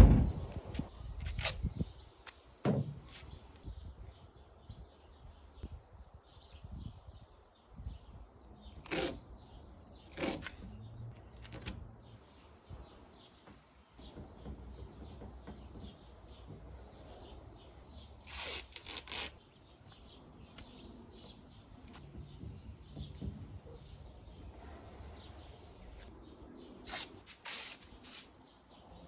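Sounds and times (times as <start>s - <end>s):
masking tape ripping: 1.2s - 2.4s, 18.2s - 19.4s, 26.8s - 28.3s.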